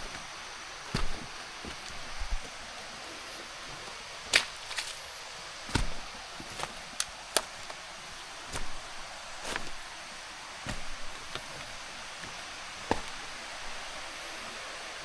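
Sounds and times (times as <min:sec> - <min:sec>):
forest hiss: 0:00.0 - 0:15.0
footsteps crunching on trail: 0:00.9 - 0:02.6, 0:05.6 - 0:14.0.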